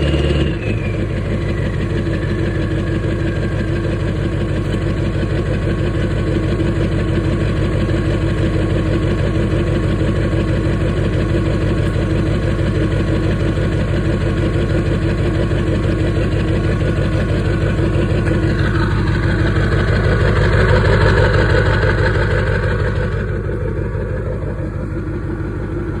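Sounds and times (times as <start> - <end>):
turbo whistle: 0.0 - 3.9
diesel engine idling and revving: 0.0 - 26.0.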